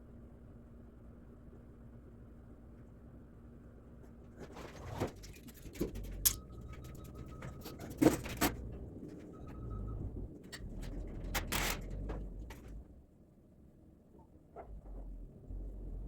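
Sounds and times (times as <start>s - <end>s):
hand tools clicking and scraping: 5.2s - 6.6s.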